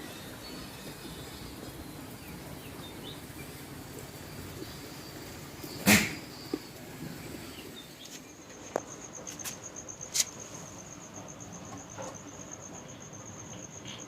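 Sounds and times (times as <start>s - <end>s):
cricket trilling: 3.9s - 14.0s.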